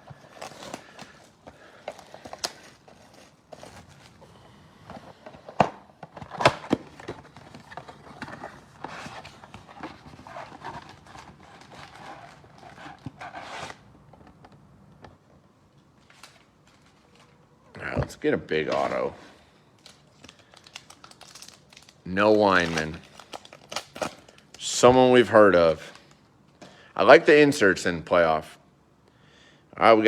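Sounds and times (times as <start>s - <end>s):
crinkling foil wrapper: 0.0s - 4.2s, 19.8s - 24.8s.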